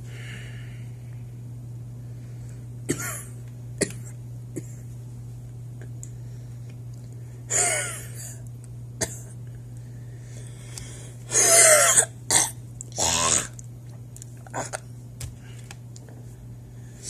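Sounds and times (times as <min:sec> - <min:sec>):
steady low hum: 0:00.0 - 0:17.0
person coughing: 0:02.9 - 0:04.8, 0:07.5 - 0:08.4, 0:09.0 - 0:09.4, 0:11.3 - 0:13.4.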